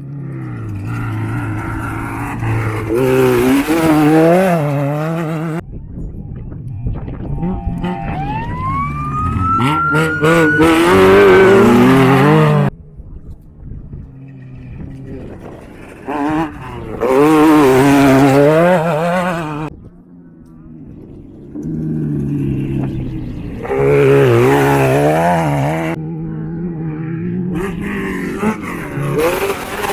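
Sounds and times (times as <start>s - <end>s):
race vehicle engines revving: 0.0s - 5.6s, 7.1s - 12.8s, 13.9s - 29.9s.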